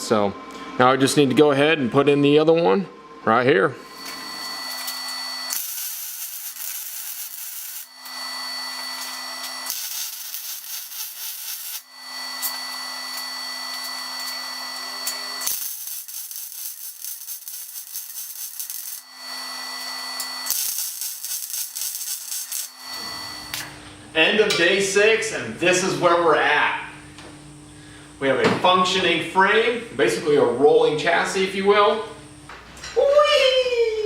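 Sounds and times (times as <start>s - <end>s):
metal tool crackling and rasping: 4.9s - 8.2s, 8.8s - 14.4s, 15.0s - 22.9s.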